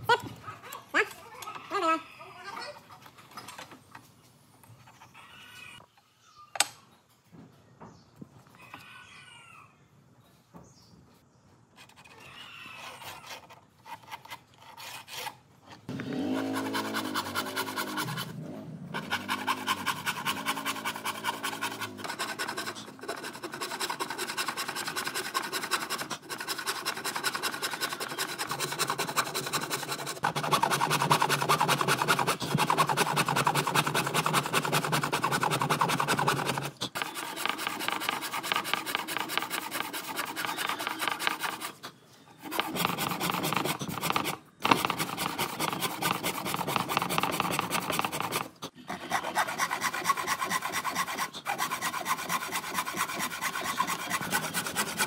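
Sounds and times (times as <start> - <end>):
abrasive tool scraping wood: 11.8 - 55.0.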